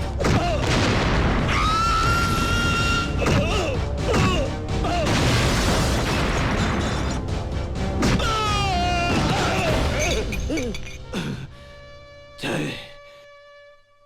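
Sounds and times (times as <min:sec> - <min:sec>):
dramatic film score: 0:00.0 - 0:13.6
booming impacts: 0:00.2 - 0:10.1.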